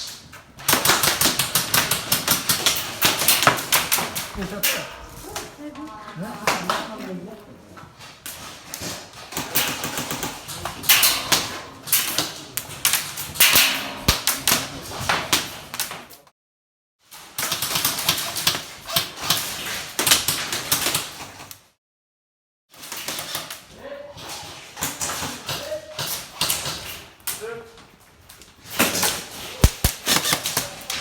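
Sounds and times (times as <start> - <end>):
airsoft guns firing bursts: 29.6 - 30.9.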